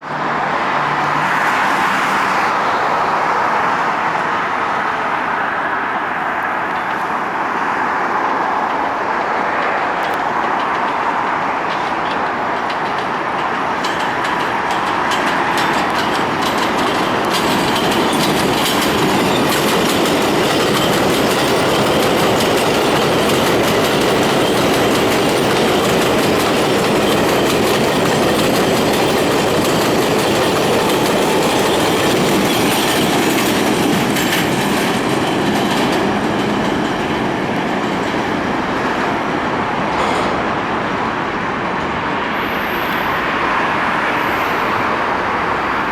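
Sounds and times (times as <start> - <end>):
subway train rumbling past: 0.0 - 45.9
wheels clattering over rail joints: 6.0 - 42.3.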